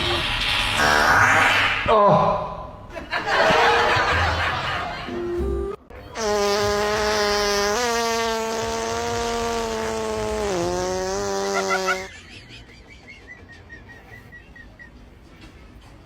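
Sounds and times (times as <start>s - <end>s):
buzzing fart noise: 0.8s - 1.3s, 5.3s - 12.1s.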